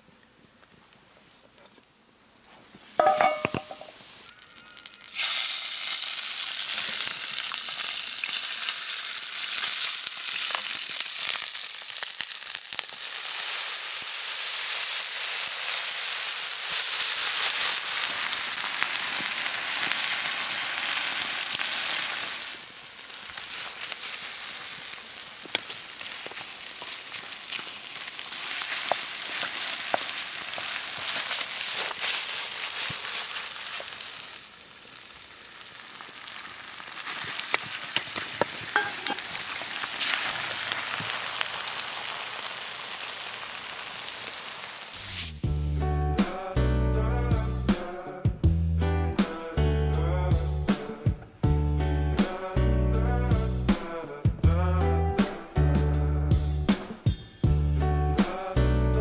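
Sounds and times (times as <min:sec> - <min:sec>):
food sizzling in a hot pan: 0:03.0 - 0:45.6.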